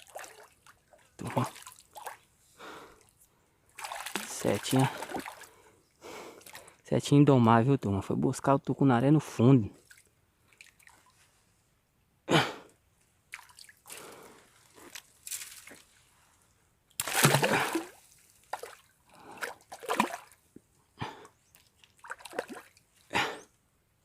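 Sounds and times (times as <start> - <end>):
water splashing and dripping: 3.8 - 5.5, 13.3 - 14.1, 17.0 - 20.4, 21.6 - 22.8.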